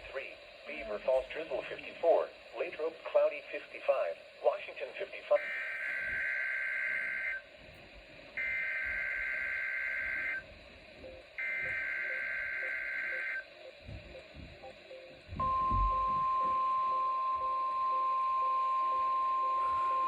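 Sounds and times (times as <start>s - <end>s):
digital data squawk bursts: 5.4s - 7.4s, 8.4s - 10.4s, 11.4s - 13.5s.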